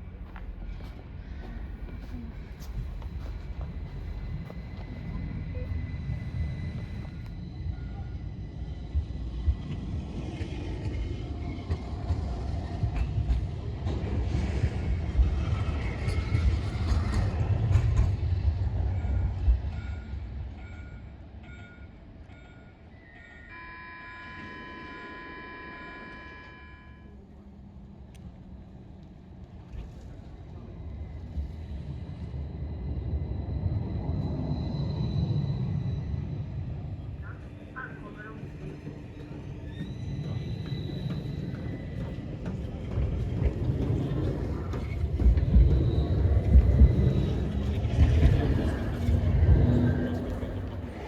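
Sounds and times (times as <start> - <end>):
tram wheels rumbling: 0.0 - 22.9, 24.2 - 51.0
multi-tone signal: 23.5 - 27.2.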